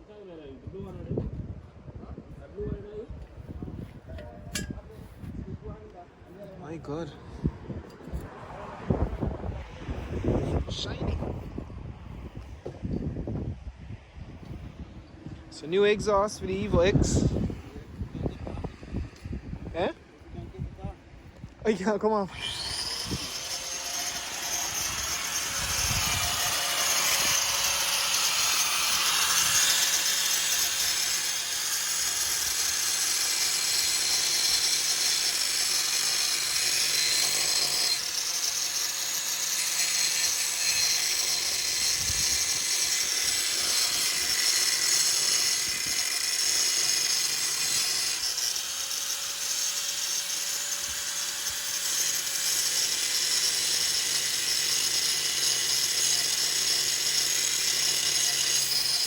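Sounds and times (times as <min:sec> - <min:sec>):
power tool running: 0:22.1 - 0:59.0.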